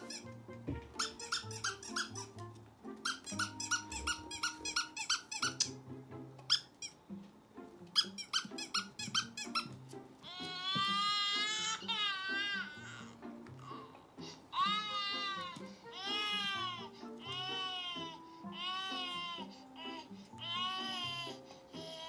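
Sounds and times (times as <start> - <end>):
squeaky toy squeaking: 0.0 - 5.8, 6.4 - 7.0, 7.9 - 13.1
background music: 0.0 - 22.0.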